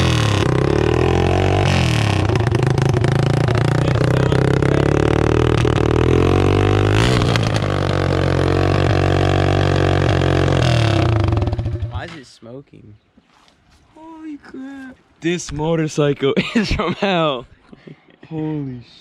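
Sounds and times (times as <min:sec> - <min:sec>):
motorcycle engine running loudly: 0:00.0 - 0:12.0.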